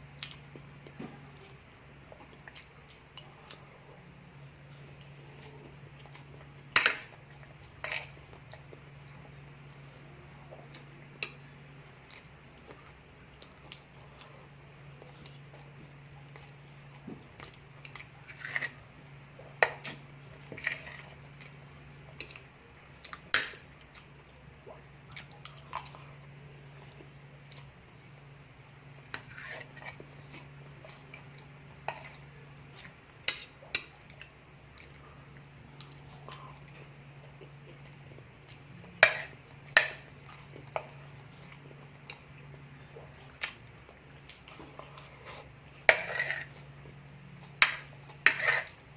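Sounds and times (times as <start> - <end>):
steady low hum: 0.0 - 48.9
person chewing crunchy food: 19.4 - 48.9.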